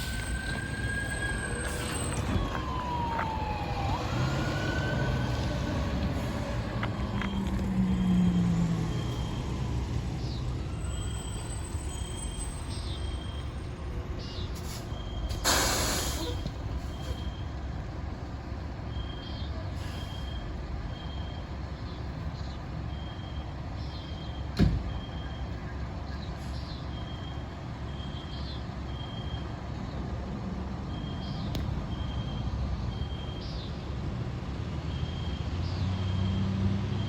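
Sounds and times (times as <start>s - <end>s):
fire trucks idling: 0.0s - 35.3s
reversing alarm beeps: 7.2s - 9.6s, 24.2s - 25.6s, 28.9s - 29.5s, 30.9s - 33.4s
air brake hiss: 14.6s - 17.2s, 19.8s - 20.4s.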